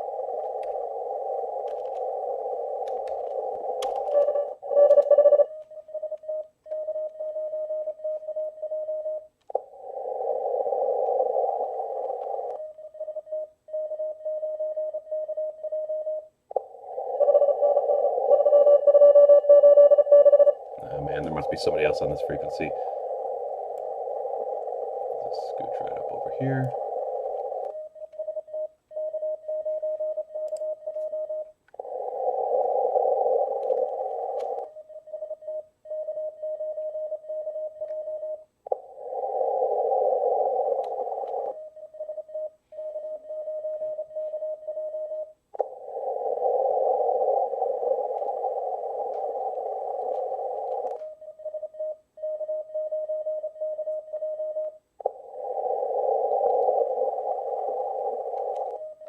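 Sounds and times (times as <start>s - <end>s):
radio receiver hiss: 0.0s - 5.3s, 9.5s - 12.6s, 20.6s - 27.8s, 31.7s - 34.7s, 38.7s - 41.6s, 45.6s - 51.0s, 55.0s - 58.8s
morse code tone: 0.0s - 9.3s, 11.4s - 38.5s.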